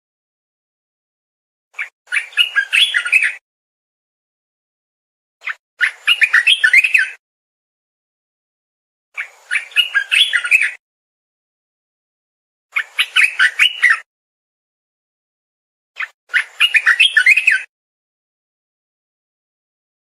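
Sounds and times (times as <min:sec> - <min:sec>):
bird singing chirping phrases: 0:01.8 - 0:03.4, 0:05.4 - 0:07.2, 0:09.2 - 0:10.8, 0:12.7 - 0:14.1, 0:16.0 - 0:17.7.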